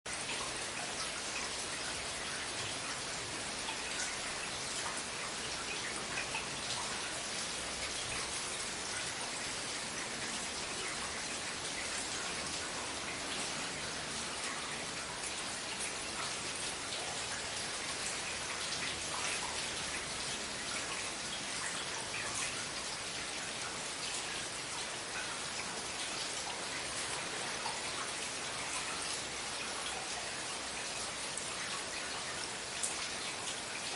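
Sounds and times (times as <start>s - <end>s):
rain pattering on hard surfaces: 0.1s - 33.9s.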